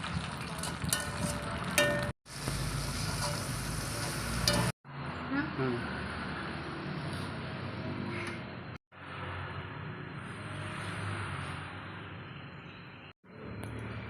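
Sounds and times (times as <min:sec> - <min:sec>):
oil sizzling in a frying pan: 0:00.0 - 0:04.7.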